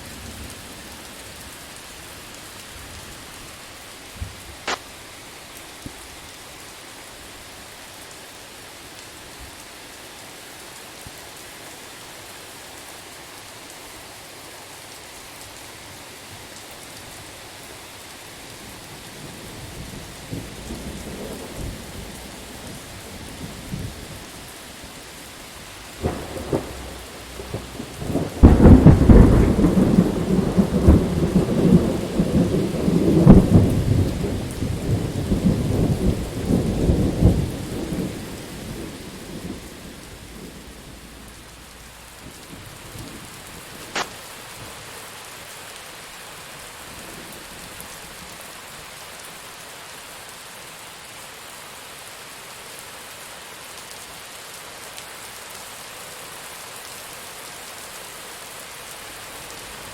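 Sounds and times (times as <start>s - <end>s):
steady rain: 0.0s - 59.9s
sharp thunder crack: 26.0s - 38.1s
rumbling thunderclap: 26.0s - 43.3s.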